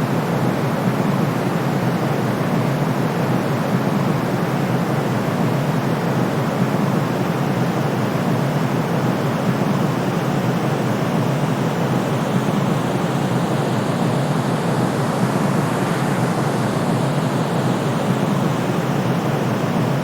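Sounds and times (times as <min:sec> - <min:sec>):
steady white noise hiss: 0:00.0 - 0:20.0.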